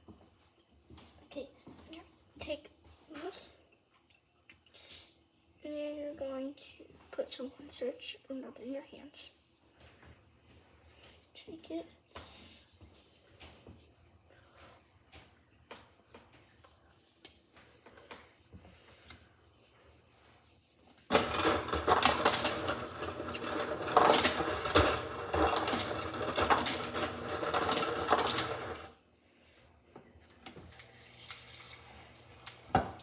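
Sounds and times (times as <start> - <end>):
utensils clattering and scraping: 21.1 - 28.9.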